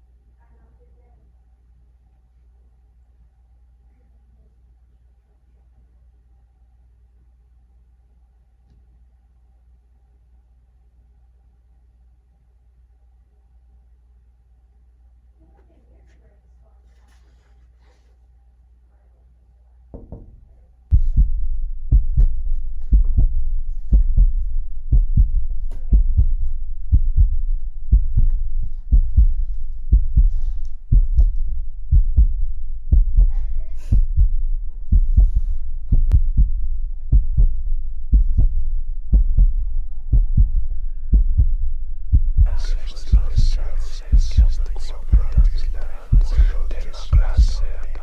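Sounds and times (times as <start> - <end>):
deep heavy heartbeat thumping: 20.9 - 48.0.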